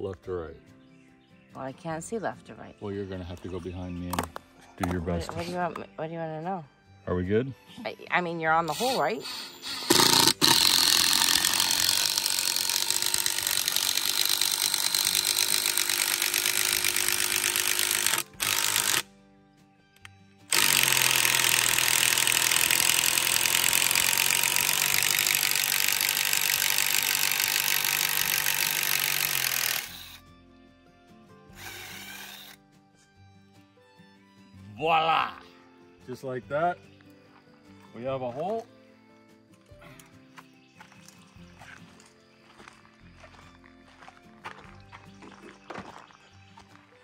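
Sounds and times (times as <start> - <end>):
power drill boring into wood: 8.8 - 19.0, 20.5 - 30.2, 31.6 - 32.6.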